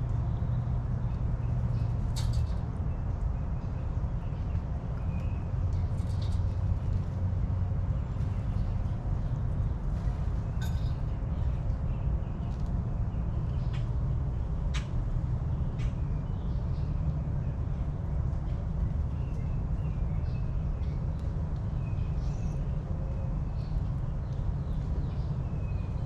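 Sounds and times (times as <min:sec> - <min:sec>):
small birds chirping: 0:18.5 - 0:26.0.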